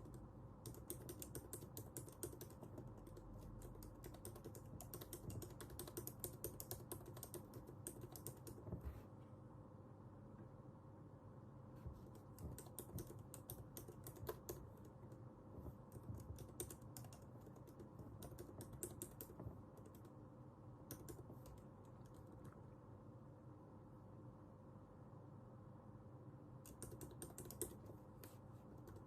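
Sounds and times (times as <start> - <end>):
keyboard typing clicks: 0.0 - 8.8, 12.0 - 20.2, 20.8 - 22.6, 26.6 - 29.0
faint room hum: 0.0 - 29.0.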